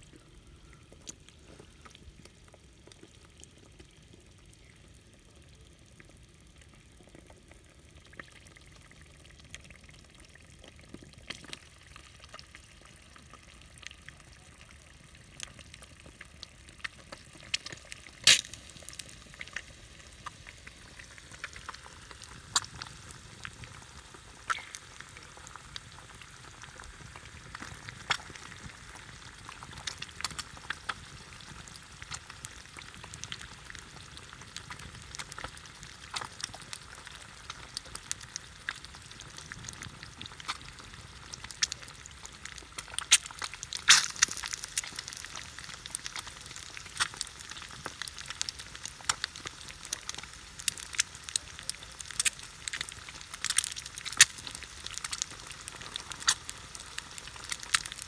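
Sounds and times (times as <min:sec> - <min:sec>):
oil popping and crackling: 0:00.0 - 0:58.0
food sizzling in a pan: 0:16.6 - 0:58.0.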